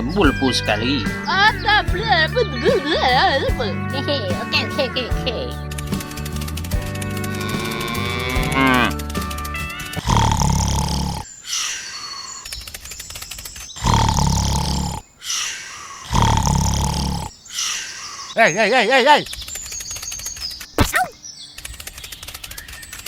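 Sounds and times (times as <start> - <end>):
music with gliding tone: 1.6 - 10.0.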